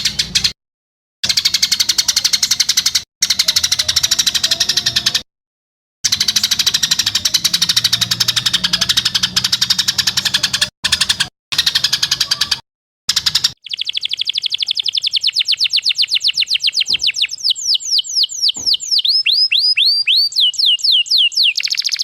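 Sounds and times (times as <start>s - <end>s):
songbird rapid rattling call: 6.1s - 22.0s.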